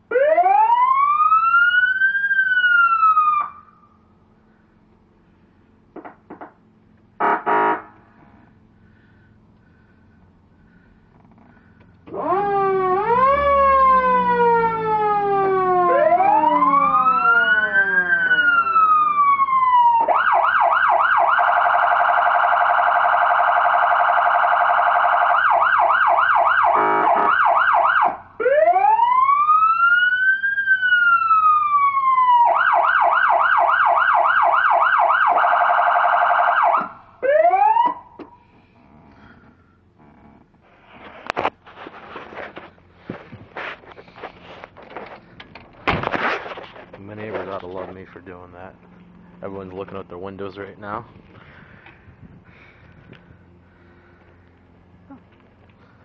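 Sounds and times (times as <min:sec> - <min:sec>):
emergency sirens wailing and yelping: 0:00.0 - 0:05.1, 0:08.4 - 0:40.4, 0:52.8 - 0:56.0.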